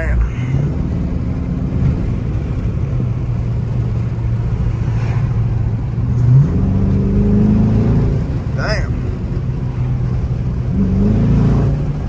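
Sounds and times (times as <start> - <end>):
car engine cruising: 0.0 - 12.0
road rumble: 0.0 - 12.0.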